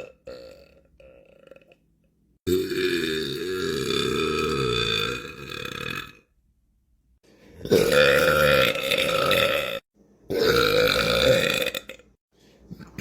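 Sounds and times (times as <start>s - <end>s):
man belching: 0.0s - 1.8s, 2.5s - 6.2s, 7.6s - 12.1s.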